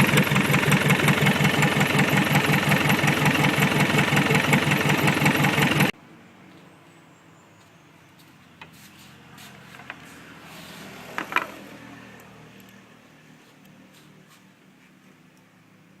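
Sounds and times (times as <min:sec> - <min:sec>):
diesel engine idling: 0:00.0 - 0:05.9.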